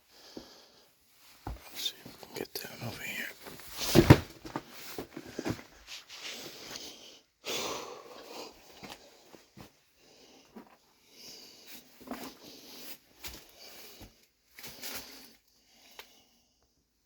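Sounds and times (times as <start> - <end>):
person breathing hard: 0.0 - 1.0, 5.1 - 16.7.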